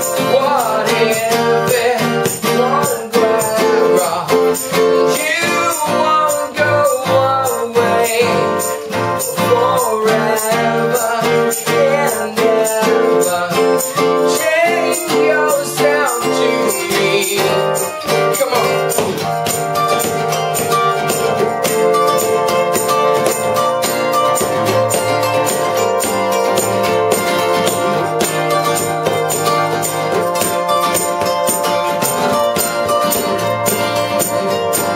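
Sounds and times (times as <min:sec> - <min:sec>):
percussion beat: 0:00.0 - 0:34.9
person singing: 0:00.0 - 0:34.9
band playing a song: 0:10.5 - 0:34.9.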